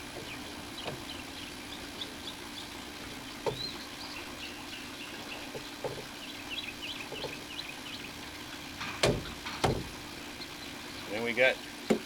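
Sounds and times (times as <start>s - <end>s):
small birds chirping: 0.0s - 8.5s, 10.1s - 11.8s
plastic pipe fittings knocking: 8.8s - 10.0s.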